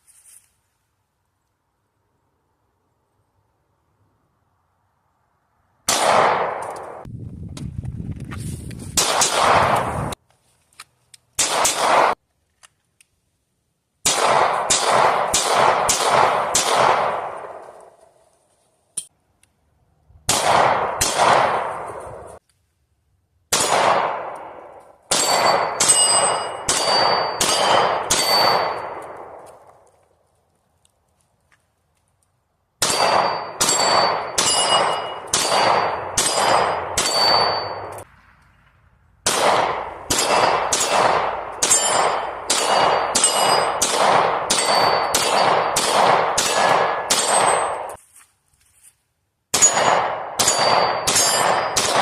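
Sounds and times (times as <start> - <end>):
gunshots: 5.9 - 7.1, 8.9 - 10.2, 11.4 - 12.2, 14.0 - 17.8, 20.3 - 22.4, 23.5 - 29.5, 32.8 - 48.0, 49.5 - 52.0.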